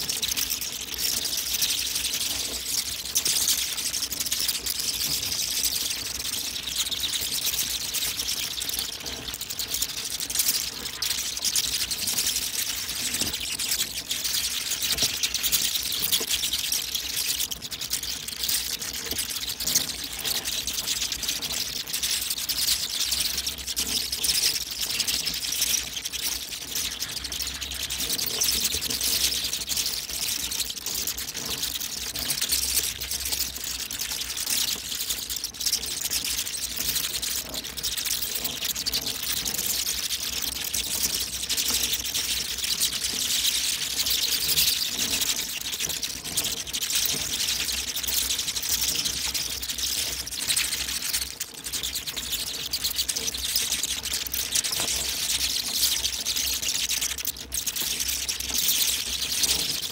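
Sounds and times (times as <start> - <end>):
bats screeching and chittering: 0.1 - 59.9.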